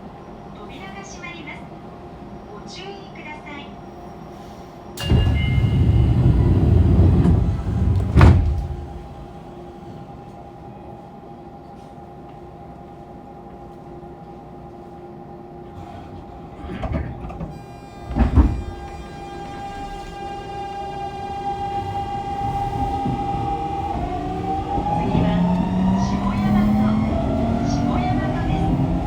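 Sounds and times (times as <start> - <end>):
line breaker clunks: 5.0 - 9.4, 16.6 - 28.8
inverter whining tones: 5.0 - 9.5, 17.4 - 29.0
train doors closing with a thud: 5.0 - 10.1, 15.7 - 29.0.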